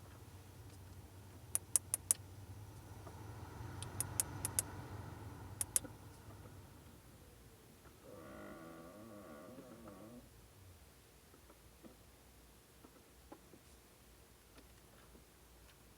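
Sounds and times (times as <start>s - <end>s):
high-pitched dashboard ticks: 0.7s - 4.9s, 5.6s - 6.6s.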